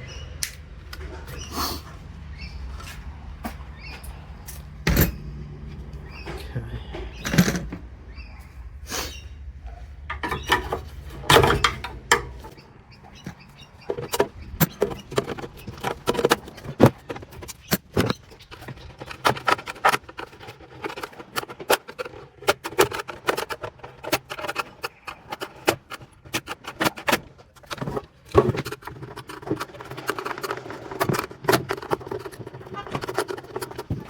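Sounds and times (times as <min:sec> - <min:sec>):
hand tools clanking on metal: 0:10.0 - 0:34.0.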